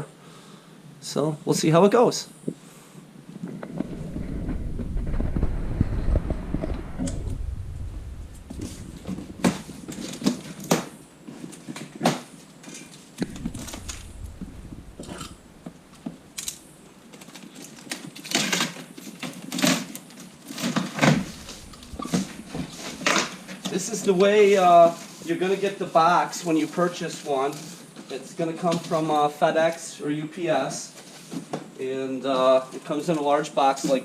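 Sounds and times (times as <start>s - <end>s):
low rumble: 3.6s - 10.0s, 13.2s - 16.5s, 21.1s - 23.5s.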